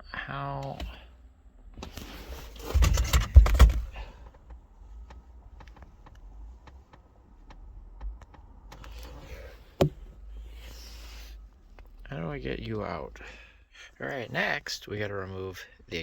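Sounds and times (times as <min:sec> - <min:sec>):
loud knocks: 0:09.8 - 0:10.1.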